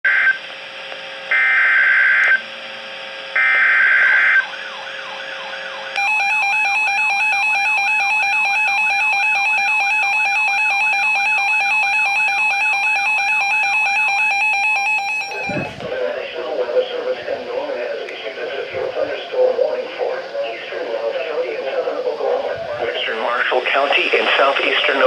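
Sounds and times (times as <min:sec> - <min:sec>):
continuous alert tone: 0:03.4 - 0:15.8
radio hiss: 0:15.2 - 0:25.0.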